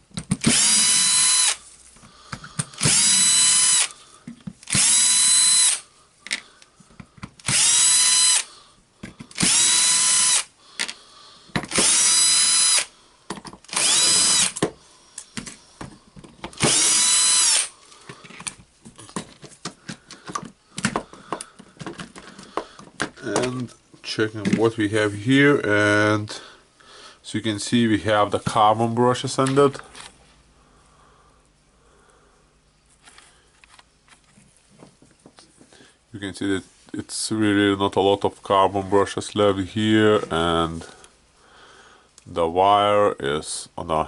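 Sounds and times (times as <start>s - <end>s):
electric screwdriver spinning: 0.4s - 1.6s, 2.7s - 4.0s, 4.6s - 5.8s, 7.4s - 8.5s, 9.3s - 10.5s, 11.7s - 12.9s, 13.7s - 14.6s, 16.5s - 17.7s
clicks and rattles of parts: 6.2s - 7.5s, 10.8s - 11.8s, 13.3s - 13.8s, 18.0s - 23.8s.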